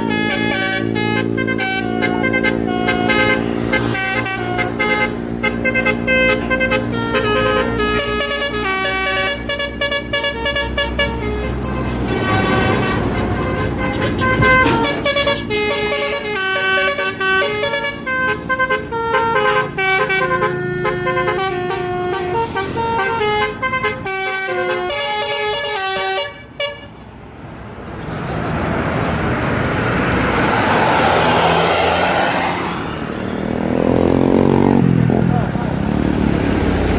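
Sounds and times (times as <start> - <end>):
musical air horns: 0.0 - 27.0
bus engine: 0.0 - 36.9.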